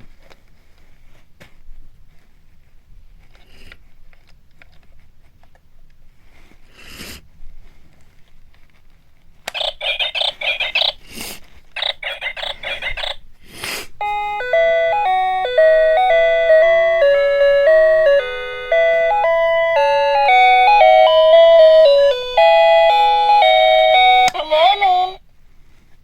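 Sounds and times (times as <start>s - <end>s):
electronic chime melody: 14.0s - 24.4s
rapid pulsing alarm tone: 14.0s - 24.4s.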